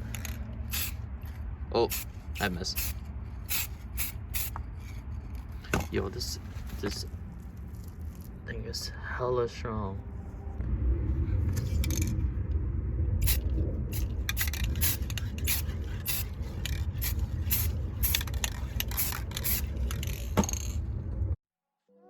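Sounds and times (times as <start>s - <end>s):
spray paint can hissing bursts: 0.0s - 5.0s, 13.2s - 20.7s
low rumble: 0.0s - 21.4s.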